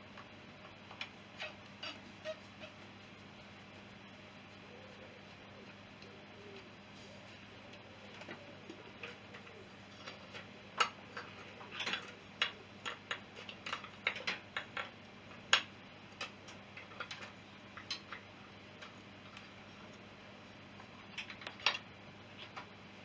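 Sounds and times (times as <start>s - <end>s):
hand tools clicking and tapping: 8.2s - 18.2s.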